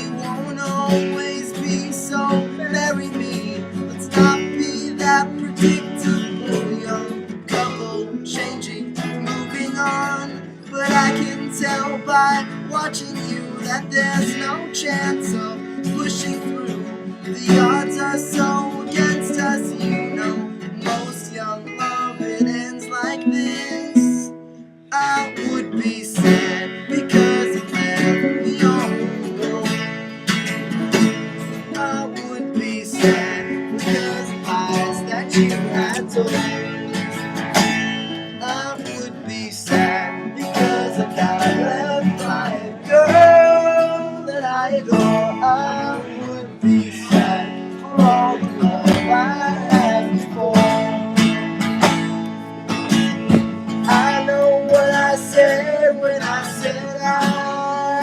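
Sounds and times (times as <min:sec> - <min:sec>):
acoustic guitar strummed and picked: 0:00.0 - 0:58.0.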